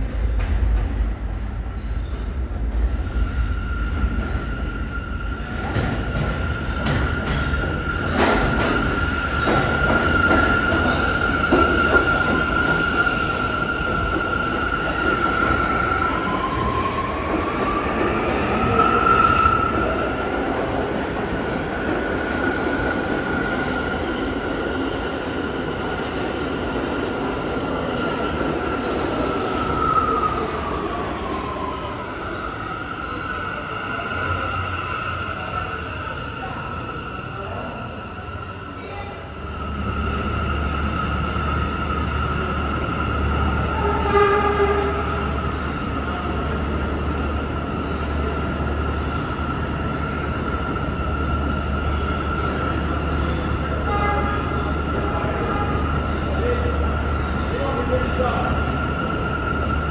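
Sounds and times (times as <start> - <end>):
subway train wheels squealing: 0.0 - 59.9
train rumble: 0.0 - 59.9.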